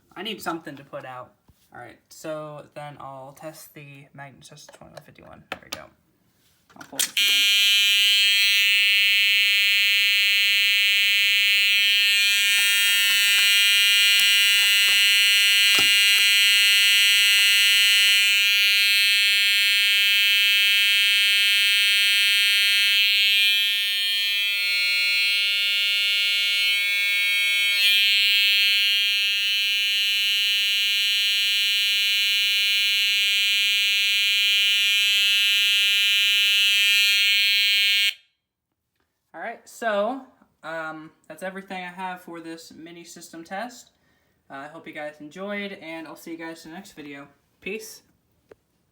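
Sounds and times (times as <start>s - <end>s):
fire alarm buzzy tone: 7.2s - 38.5s.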